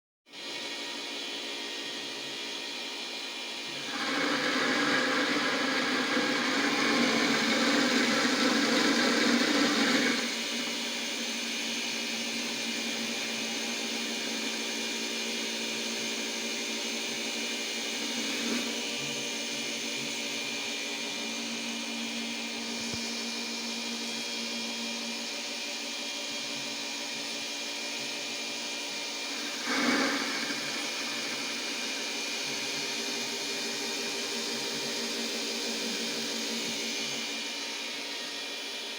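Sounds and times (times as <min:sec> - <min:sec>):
lathe cutting metal: 0:03.7 - 0:20.6, 0:29.1 - 0:38.9
stepper motor tones: 0:29.2 - 0:38.6.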